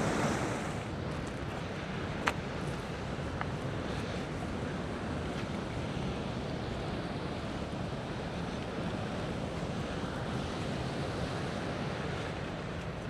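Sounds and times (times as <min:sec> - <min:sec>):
ocean surf: 0:00.0 - 0:01.0.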